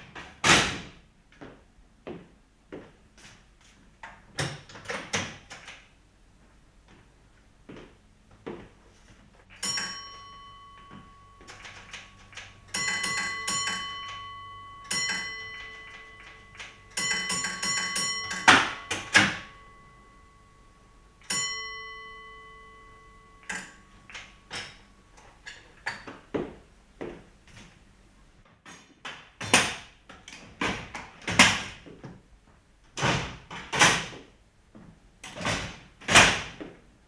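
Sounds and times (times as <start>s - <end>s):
small bell ringing: 9.5s - 26.1s.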